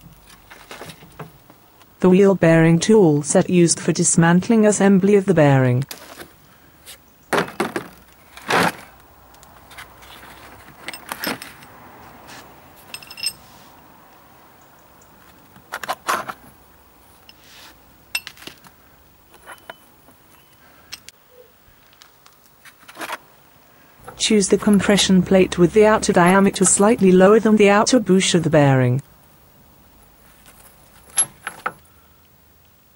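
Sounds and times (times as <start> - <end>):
steel tool pieces clinking: 12.9 - 13.4, 18.1 - 18.5, 19.3 - 21.1.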